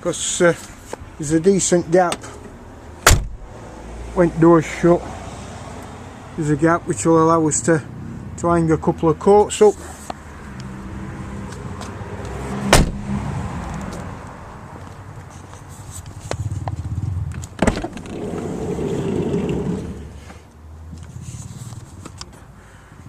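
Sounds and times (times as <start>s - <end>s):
van door thumping: 3.0s - 3.5s, 12.7s - 13.1s, 17.6s - 18.1s.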